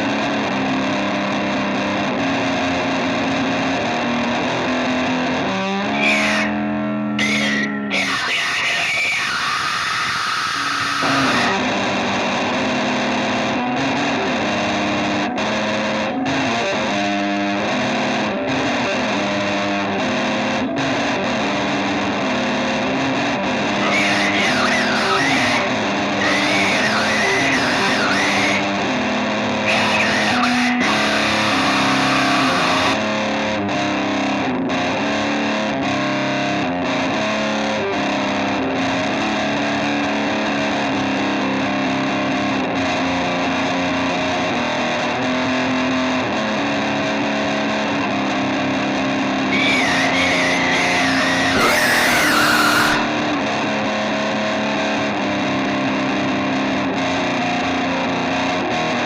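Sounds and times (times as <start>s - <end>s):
distorted electric guitar rock: 0.0s - 59.0s
high gliding guitar lead: 5.3s - 20.6s, 21.2s - 33.5s, 49.4s - 55.8s.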